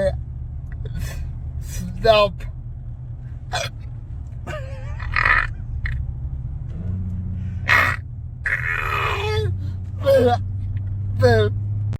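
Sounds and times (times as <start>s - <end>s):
truck engine drone from inside cab: 0.0s - 11.9s
person hiccuping: 3.5s - 3.8s, 4.5s - 5.6s, 7.7s - 9.2s
person laughing: 4.5s - 5.6s.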